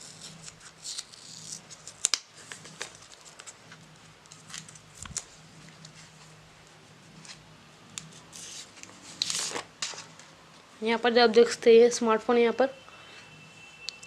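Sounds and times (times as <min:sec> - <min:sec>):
plastic packaging crinkling: 0:00.1 - 0:06.0.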